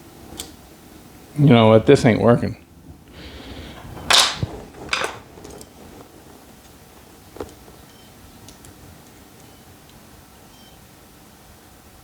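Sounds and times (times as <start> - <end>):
tools scraping and clattering: 3.7 - 5.7.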